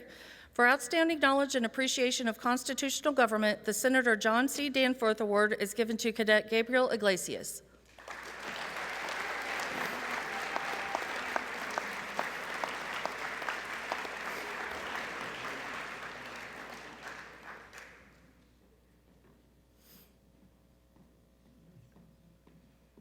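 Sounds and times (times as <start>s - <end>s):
sharp individual claps: 7.9s - 18.1s
audience applause: 7.9s - 18.2s.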